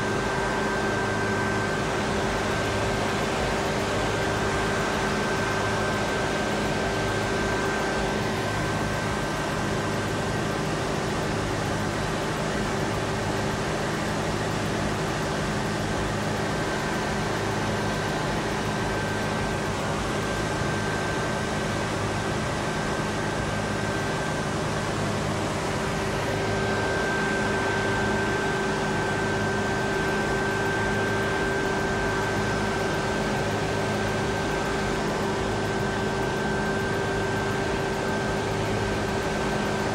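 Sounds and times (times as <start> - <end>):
mechanical drone: 0.0 - 39.9
steady whining tones: 0.0 - 39.9
low hum: 16.7 - 39.8.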